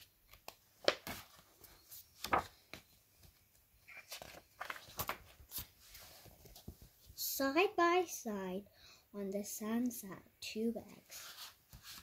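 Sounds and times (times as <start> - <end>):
book pages turning: 0.0 - 7.1, 11.1 - 12.0.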